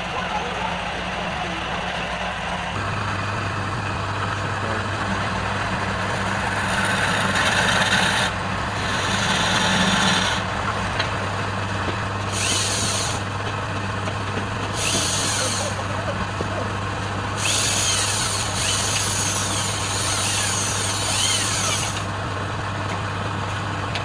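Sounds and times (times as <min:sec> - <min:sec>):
lathe motor hum: 0:00.0 - 0:24.0
tool hissing on spinning wood: 0:06.1 - 0:10.4, 0:12.2 - 0:13.4, 0:14.6 - 0:16.0, 0:17.3 - 0:22.1.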